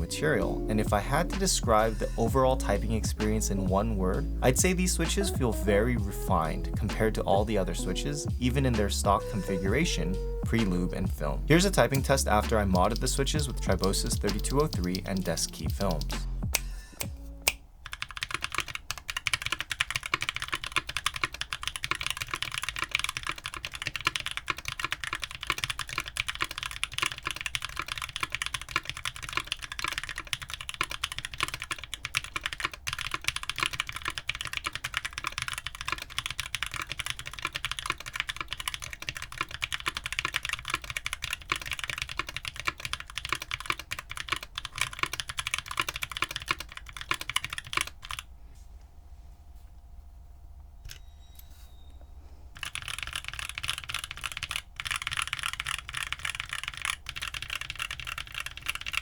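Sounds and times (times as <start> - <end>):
fast typing on mechanical keyboard: 11.9 - 16.2, 17.8 - 48.3, 52.6 - 59.0.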